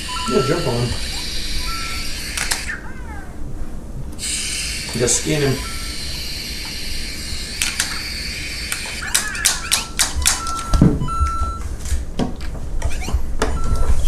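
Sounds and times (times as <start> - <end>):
short electronic beeps: 0.0 - 2.8, 5.3 - 6.2, 8.9 - 11.7, 13.5 - 14.0.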